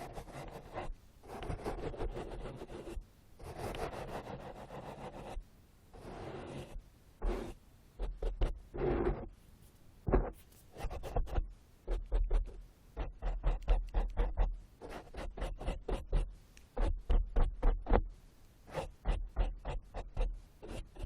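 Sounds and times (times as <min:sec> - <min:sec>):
ear-cleaning tool scratching microphone: 0:06.0 - 0:09.3, 0:18.7 - 0:21.0.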